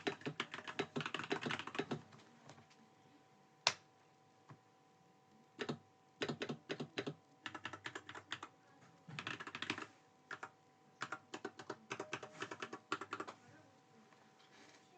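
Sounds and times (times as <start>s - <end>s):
mechanical keyboard typing: 0.0s - 2.0s, 5.6s - 8.5s, 9.2s - 13.4s.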